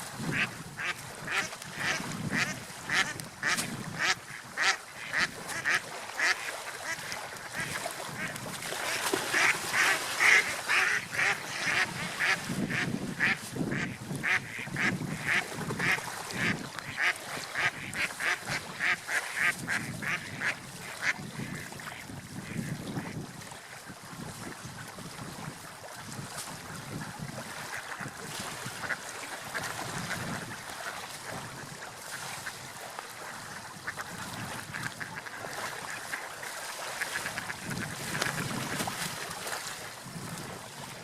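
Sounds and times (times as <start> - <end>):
ducks quacking: 0.3 - 21.8, 33.8 - 36.3.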